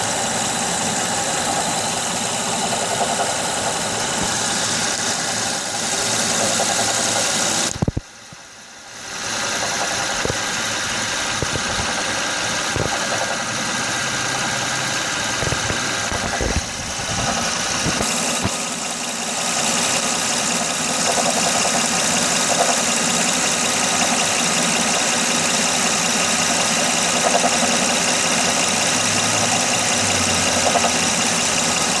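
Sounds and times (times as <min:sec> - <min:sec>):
car engine idling with knocking: 0:00.0 - 0:32.0.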